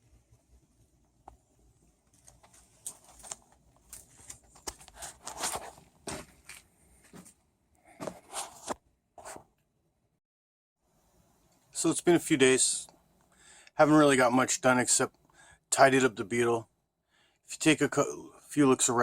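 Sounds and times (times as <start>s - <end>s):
handling scrapes and rustles: 2.0s - 7.4s, 8.0s - 9.4s.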